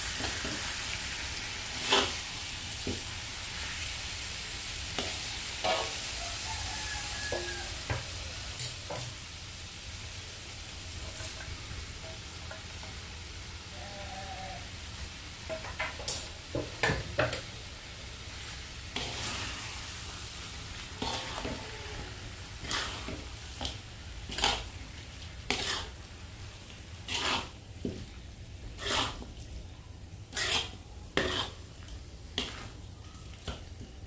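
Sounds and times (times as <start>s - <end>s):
steady sizzle: 0.0s - 34.0s
utensil scraping and knocking pan: 30.4s - 31.6s.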